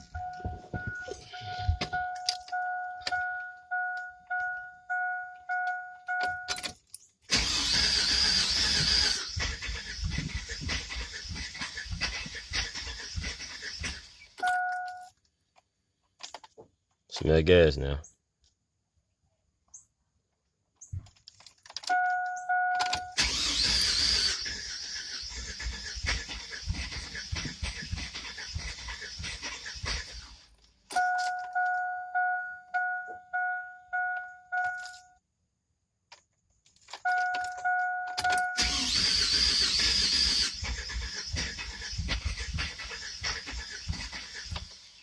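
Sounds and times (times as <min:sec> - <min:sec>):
truck warning chime dinging: 0:00.0 - 0:06.7, 0:21.9 - 0:23.2, 0:30.9 - 0:35.2, 0:37.1 - 0:38.7
starter cranking engine: 0:07.3 - 0:14.4, 0:22.9 - 0:30.5, 0:38.2 - 0:45.0.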